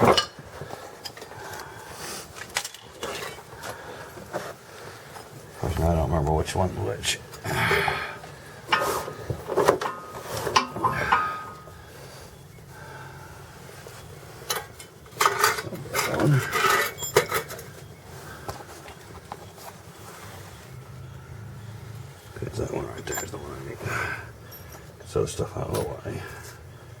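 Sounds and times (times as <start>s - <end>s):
metal tools clinking: 0.0s - 1.3s, 2.2s - 4.5s, 8.7s - 11.8s, 13.9s - 17.9s, 22.3s - 26.0s.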